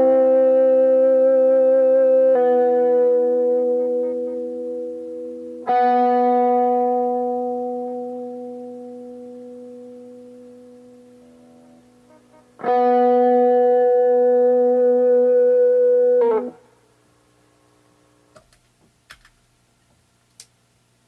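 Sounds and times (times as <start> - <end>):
electric guitar note: 0.0 - 16.7.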